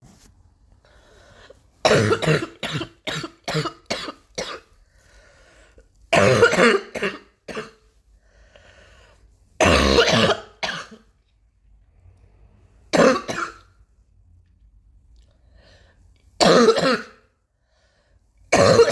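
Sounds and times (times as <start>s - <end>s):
faint breaths: 0.7s - 1.8s, 4.8s - 6.0s, 8.0s - 9.5s, 15.2s - 16.2s, 17.5s - 18.5s
person coughing: 1.8s - 4.7s, 6.2s - 7.8s, 9.6s - 11.1s, 12.9s - 13.7s, 16.4s - 17.3s, 18.5s - 18.9s.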